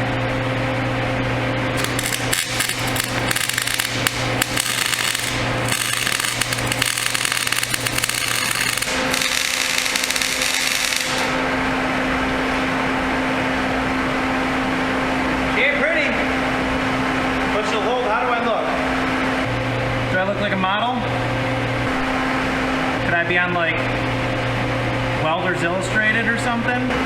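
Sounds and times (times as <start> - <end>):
steady low hum: 0.0 - 15.4, 19.0 - 27.0
welding arc crackling: 1.7 - 11.5.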